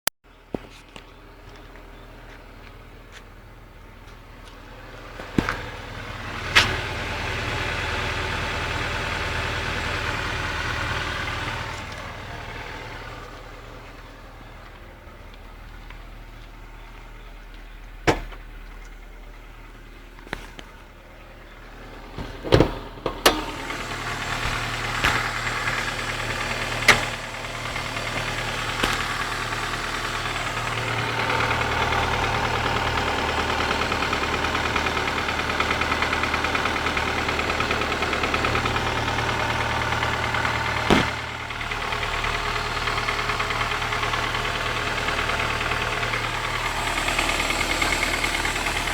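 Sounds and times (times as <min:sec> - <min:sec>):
car engine knocking: 0:00.3 - 0:48.9
sharp clicks: 0:40.9 - 0:41.6.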